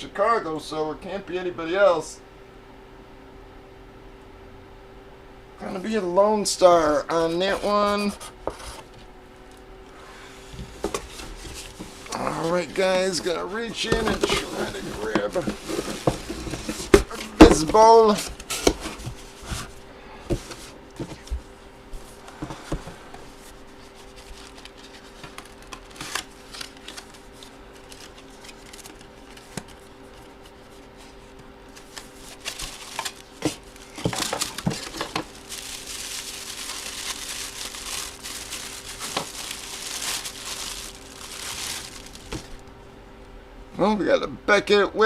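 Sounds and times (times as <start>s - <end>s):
packaging crinkling: 10.9s - 19.7s, 23.8s - 30.9s, 31.7s - 42.7s.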